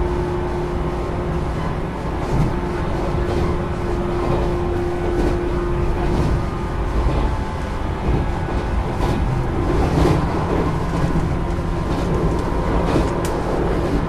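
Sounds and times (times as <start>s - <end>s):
train motor hum: 0.0s - 14.0s
wheels rumbling on rails: 0.0s - 14.0s.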